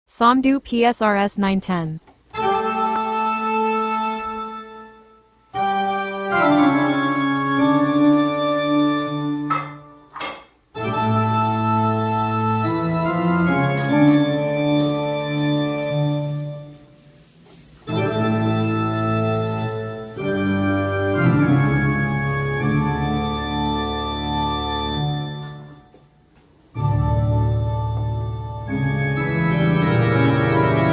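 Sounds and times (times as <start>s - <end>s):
keyboard organ chords: 2.3s - 10.1s, 10.7s - 16.9s, 17.9s - 26.0s, 26.8s - 30.9s.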